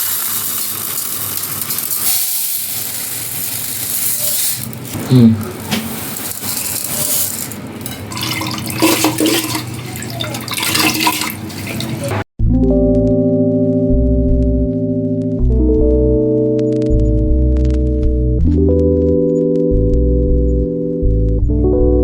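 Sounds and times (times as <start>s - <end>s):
tap water splashing into sink: 8.1s - 12.2s.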